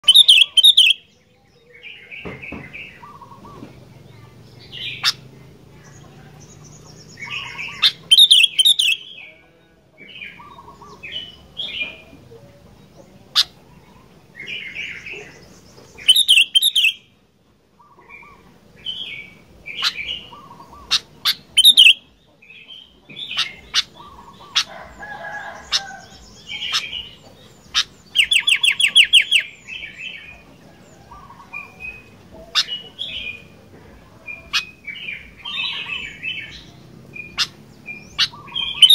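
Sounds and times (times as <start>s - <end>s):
bulbul singing whistled phrases: 0.0s - 3.7s, 4.4s - 9.4s, 14.4s - 17.2s, 17.8s - 24.8s, 25.6s - 33.6s, 34.3s - 38.9s.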